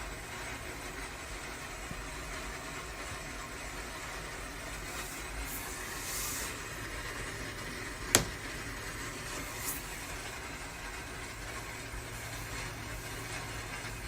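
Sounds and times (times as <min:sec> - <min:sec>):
rain on a tin roof: 0:00.0 - 0:05.9, 0:06.6 - 0:14.0
sharp loud tap: 0:08.1 - 0:08.4.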